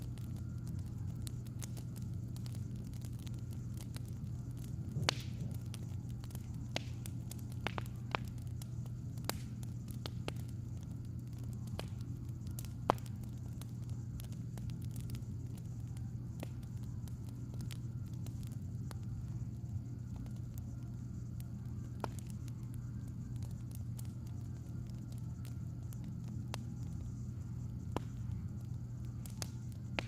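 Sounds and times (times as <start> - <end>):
steady low hum: 0.0 - 30.0
wood fire crackling: 0.0 - 30.0.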